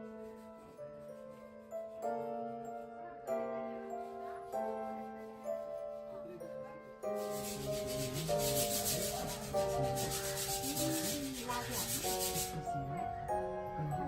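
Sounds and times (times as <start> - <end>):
gentle background music: 0.0 - 14.0
rhythmic rasping rubbing: 7.1 - 12.8.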